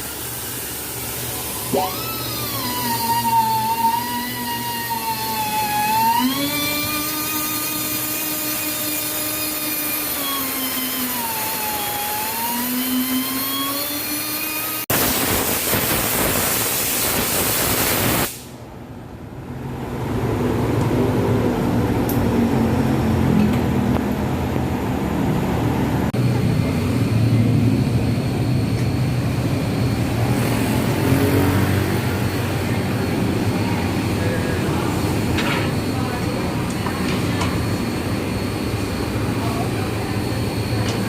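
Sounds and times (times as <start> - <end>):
motor whining: 1.2 - 14.8
loud hiss: 14.9 - 18.6.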